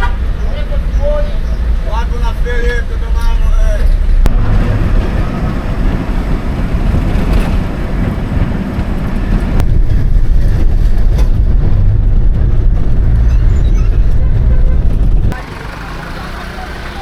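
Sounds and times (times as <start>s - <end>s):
vehicle engine and road noise: 0.0s - 17.0s
wind buffeting: 3.6s - 15.4s.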